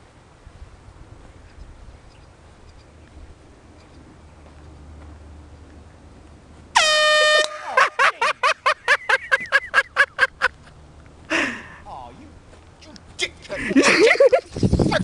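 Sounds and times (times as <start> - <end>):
air horn blast and toots: 6.8 - 7.8.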